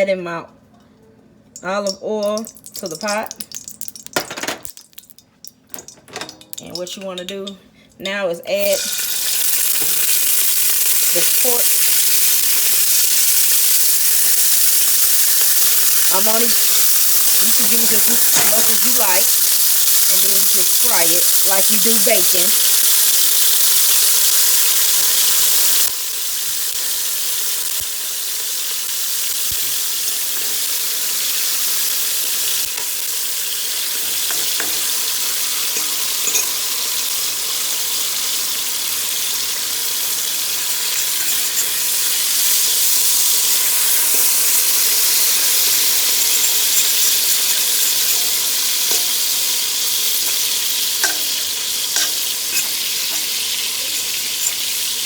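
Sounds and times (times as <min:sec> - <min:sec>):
meat sizzling in oil: 0:08.6 - 0:55.0.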